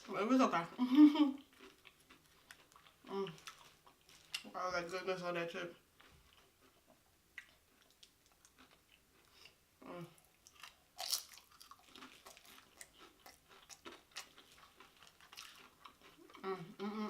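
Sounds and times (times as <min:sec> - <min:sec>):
crisp chewing of chips: 0:01.4 - 0:05.0, 0:06.0 - 0:09.6, 0:10.2 - 0:16.5
crunch of tortilla chip bite: 0:10.5 - 0:16.2.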